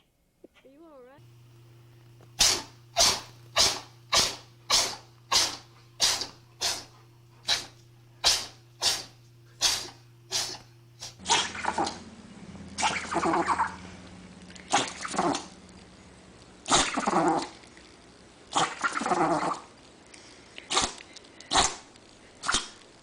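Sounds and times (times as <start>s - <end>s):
dog sneezing: 2.4s - 12.0s, 16.7s - 17.5s, 20.7s - 21.8s.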